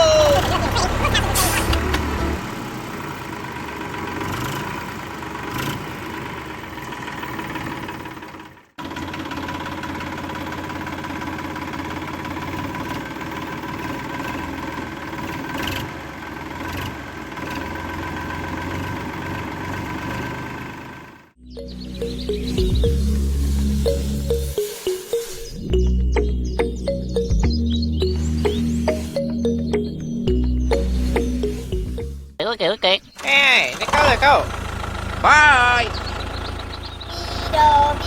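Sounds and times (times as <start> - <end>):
toy tractor engines running: 0.0 - 21.3, 32.6 - 38.0.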